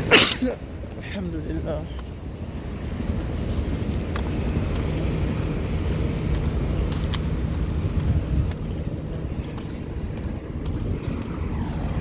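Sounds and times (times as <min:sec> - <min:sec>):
vehicle engine rumbling: 0:00.0 - 0:12.0.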